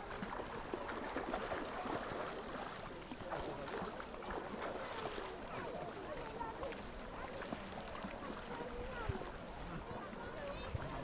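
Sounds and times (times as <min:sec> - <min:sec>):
wind: 0:00.0 - 0:11.0.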